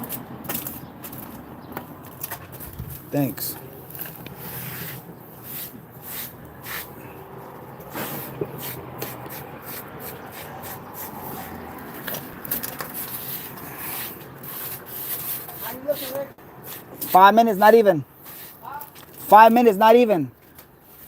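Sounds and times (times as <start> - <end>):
rubbing and scraping: 0.0 - 17.3, 18.2 - 19.4, 20.8 - 21.0.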